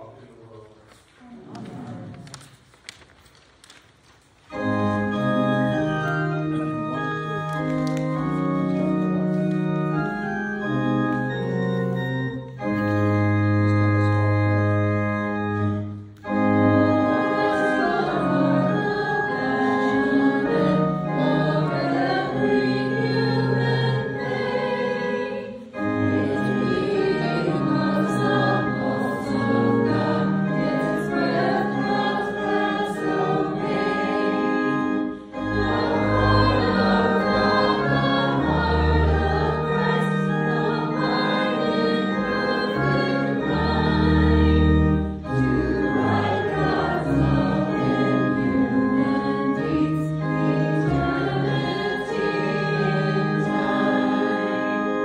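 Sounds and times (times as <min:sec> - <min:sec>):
church organ: 0:00.0 - 0:55.0
group singing a hymn: 0:04.5 - 0:12.8, 0:15.8 - 0:55.0.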